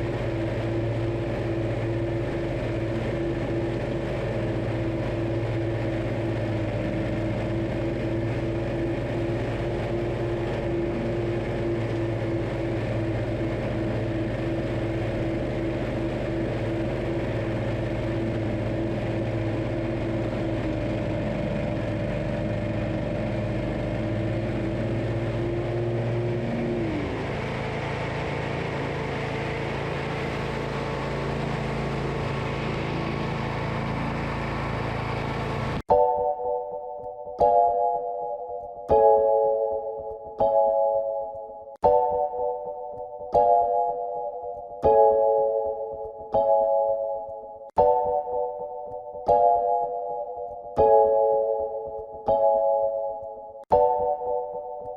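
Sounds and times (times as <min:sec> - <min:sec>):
riding mower engine running: 0:00.0 - 0:36.3.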